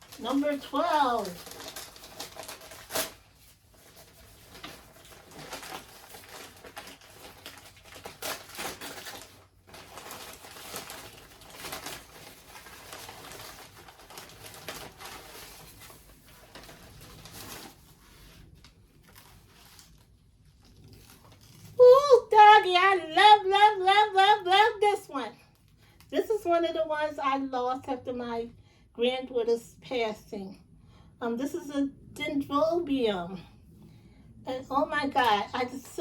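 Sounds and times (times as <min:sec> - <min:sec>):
packaging rustling and crinkling: 0:00.0 - 0:21.9.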